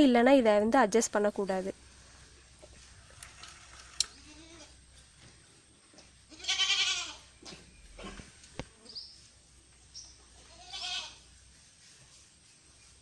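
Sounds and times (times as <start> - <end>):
animal bleating: 4.1 - 4.8, 6.3 - 7.3, 10.4 - 11.2.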